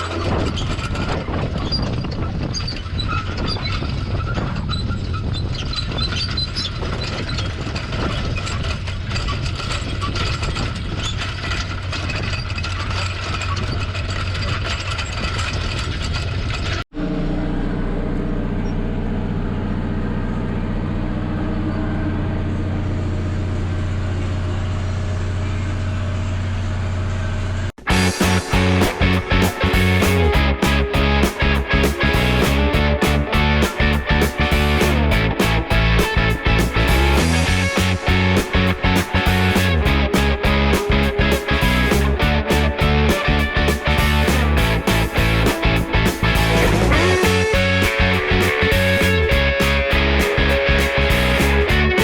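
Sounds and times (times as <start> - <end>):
tractor engine running: 7.5 - 52.0.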